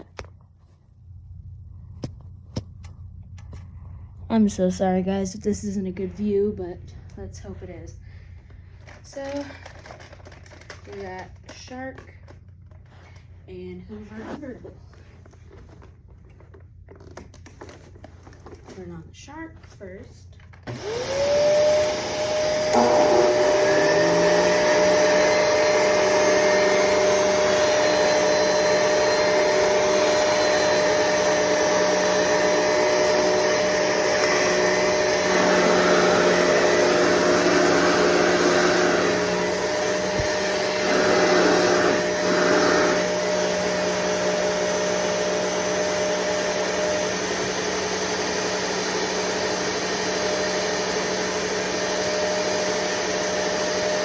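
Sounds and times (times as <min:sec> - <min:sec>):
vacuum cleaner motors whining: 0:20.6 - 0:54.0.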